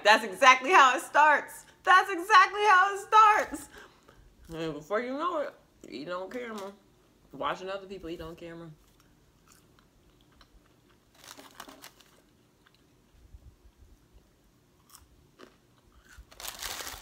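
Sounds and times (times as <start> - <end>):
crunchy chewing of food: 8.8 - 17.0.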